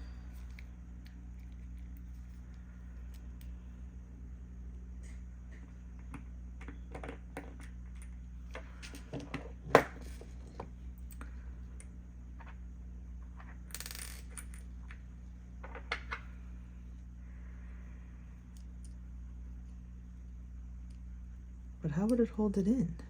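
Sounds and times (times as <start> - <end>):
small metal parts clicking: 0.0 - 3.6, 13.7 - 14.7.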